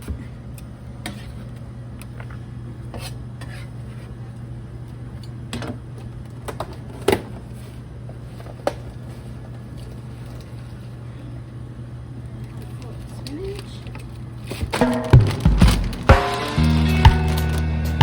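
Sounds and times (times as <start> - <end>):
utensils and dishes clinking: 12.5 - 18.0.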